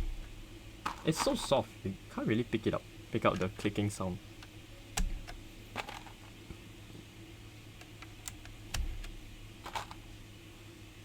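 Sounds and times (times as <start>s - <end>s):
keyboard switches clicking: 7.8s - 9.2s.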